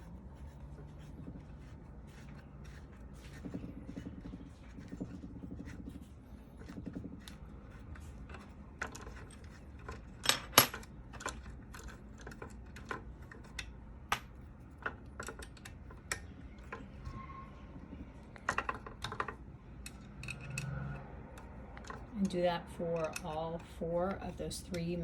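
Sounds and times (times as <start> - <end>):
wrench clicking on metal screws: 22.8 - 23.7.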